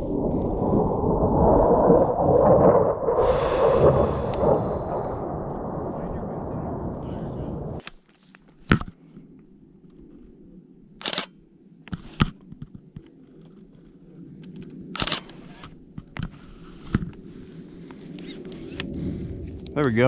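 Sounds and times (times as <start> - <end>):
steady low rumble: 0.0 - 7.8, 17.2 - 20.0
camera handling clicks: 11.0 - 11.3, 14.4 - 15.4.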